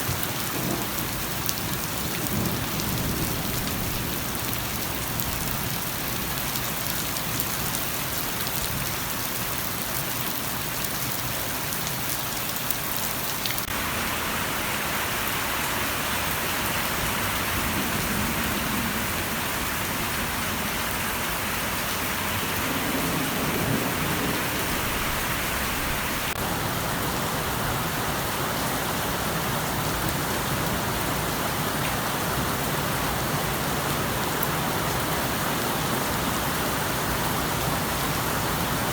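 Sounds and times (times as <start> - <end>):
rain pattering on surfaces: 0.0 - 38.9.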